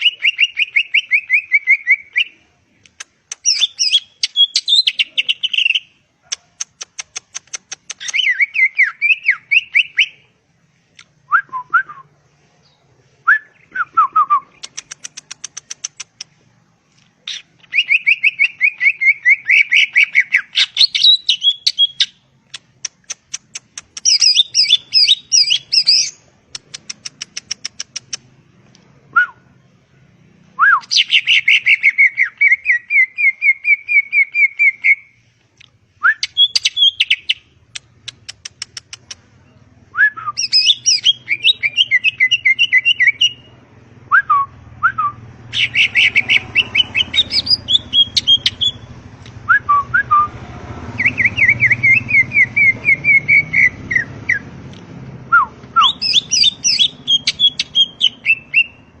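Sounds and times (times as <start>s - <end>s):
bird singing: 0.0s - 2.4s, 3.4s - 6.0s, 8.0s - 10.4s, 17.2s - 22.3s, 24.0s - 26.3s, 29.2s - 35.2s, 36.0s - 37.6s, 39.4s - 50.3s, 50.9s - 54.6s, 55.3s - 59.0s.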